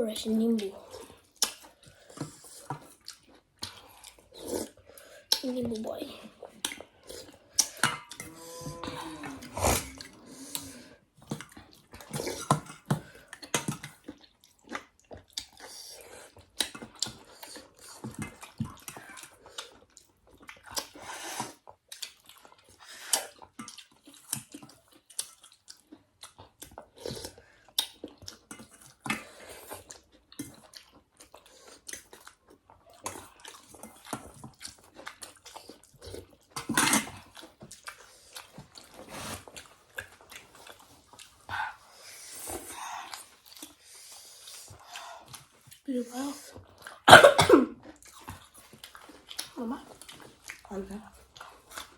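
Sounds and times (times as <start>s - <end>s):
chewing: 0.2s - 47.1s, 47.7s - 51.9s
wet slurping of noodles: 7.0s - 11.2s, 39.0s - 39.7s.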